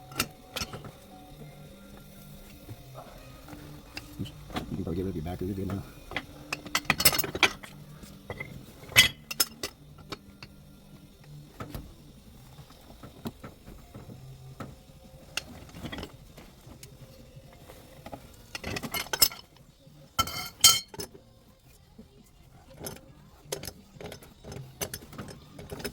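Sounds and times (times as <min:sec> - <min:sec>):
metal pipe and tools clinking: 0:00.0 - 0:01.0, 0:03.0 - 0:10.5, 0:18.0 - 0:19.6, 0:20.2 - 0:21.2
metal clatter: 0:05.6 - 0:10.2.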